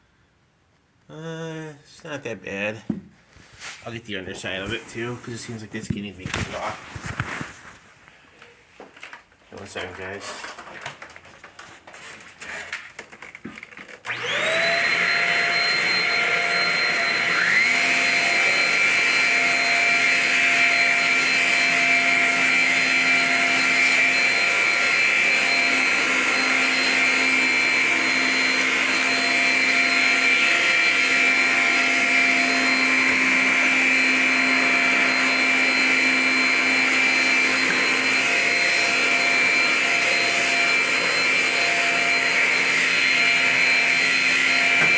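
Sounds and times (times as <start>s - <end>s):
vacuum motor whine: 14.0s - 44.9s.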